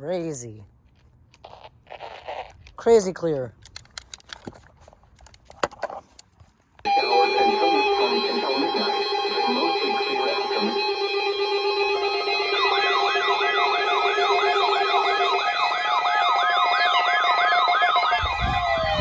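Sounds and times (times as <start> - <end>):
keyboard passage: 6.9 - 17.0
electronic siren yelping: 6.9 - 19.0
long falling tone: 6.9 - 19.0
synthesizer tones: 6.9 - 19.0.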